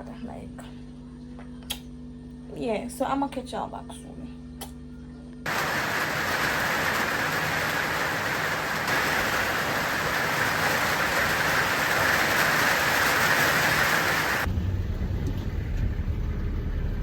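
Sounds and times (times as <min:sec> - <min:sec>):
heavy rain falling: 0:05.5 - 0:17.0.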